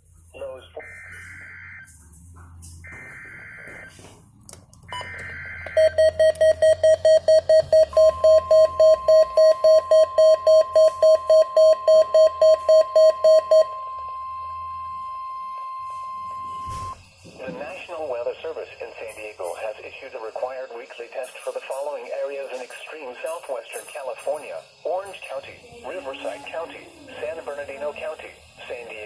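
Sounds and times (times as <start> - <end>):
steady warning alarm tone: 0.4 - 4.1, 4.9 - 22.7
rapid alert beeping: 4.9 - 17.0.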